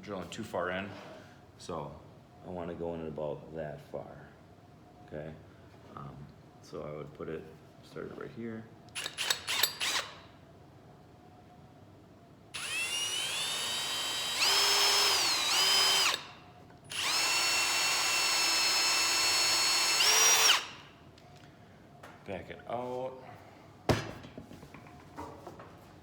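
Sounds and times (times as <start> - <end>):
drill clicks: 8.9 - 10.2, 12.6 - 16.3, 16.9 - 20.9
power drill whining: 9.0 - 10.2, 12.6 - 20.9.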